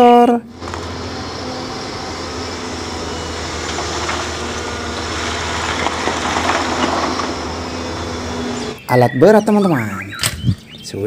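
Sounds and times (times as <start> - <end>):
small motor hissing: 0.5 - 8.8.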